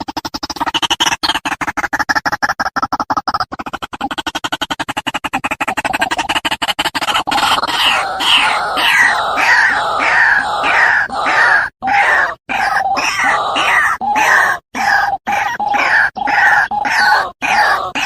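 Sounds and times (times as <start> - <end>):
waterhen harsh croaking calls: 3.7 - 18.0.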